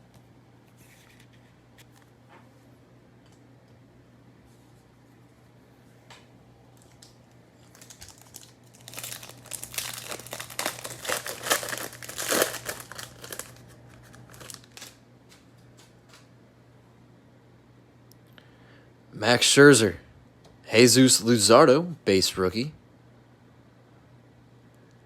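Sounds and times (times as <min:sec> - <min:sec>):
foil wrapper crinkling and tearing: 0:06.8 - 0:15.4.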